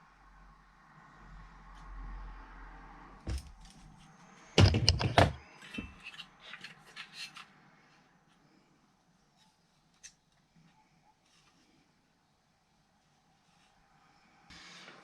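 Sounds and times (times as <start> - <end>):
plastic and metal parts clattering: 4.6 - 7.5.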